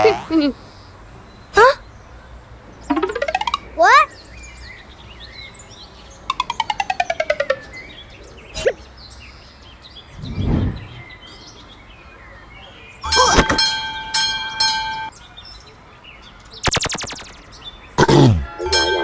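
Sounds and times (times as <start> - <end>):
low whoosh: 10.1 - 11.2
bird chirps: 16.6 - 17.5.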